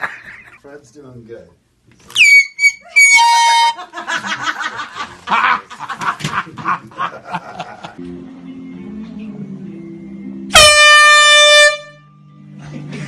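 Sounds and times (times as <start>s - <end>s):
air horn blast: 10.5s - 12.2s.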